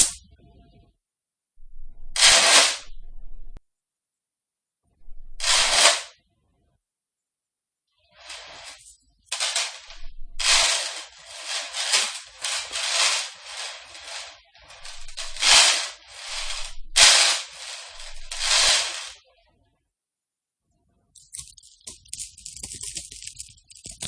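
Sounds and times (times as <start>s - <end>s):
metal chains clinking: 8.2s - 19.2s.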